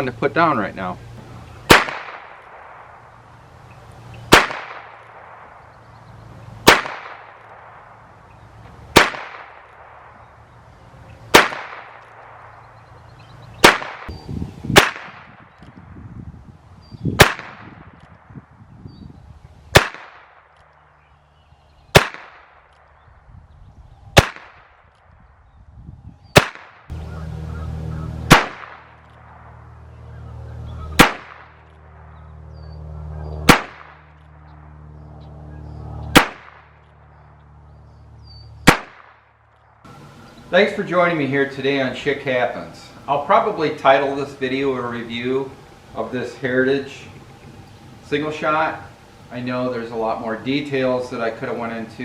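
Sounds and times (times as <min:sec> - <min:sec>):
revolver shots: 0:06.6 - 0:08.0, 0:13.6 - 0:15.5, 0:27.9 - 0:29.4, 0:30.8 - 0:34.2, 0:35.7 - 0:37.2.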